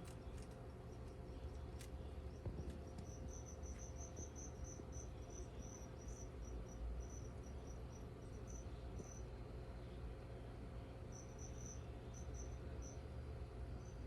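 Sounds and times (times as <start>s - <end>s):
faint steady hum: 0.0s - 14.0s
cricket chirping: 2.3s - 9.3s, 11.1s - 13.0s.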